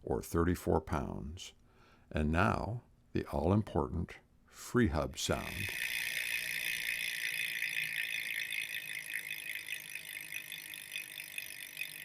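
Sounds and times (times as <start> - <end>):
bicycle freehub ratcheting buzz: 5.4 - 12.0.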